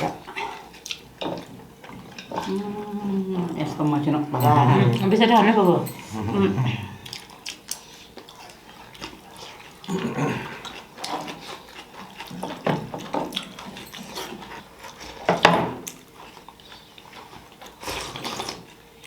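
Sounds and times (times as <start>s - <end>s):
chewing food: 0.0s - 19.0s
low vocal sounds: 2.3s - 5.2s, 5.9s - 7.3s, 9.9s - 10.6s.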